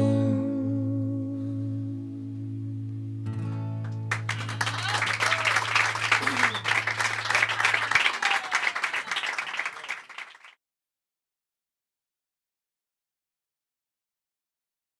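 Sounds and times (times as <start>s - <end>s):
audience applauding: 4.1s - 10.6s.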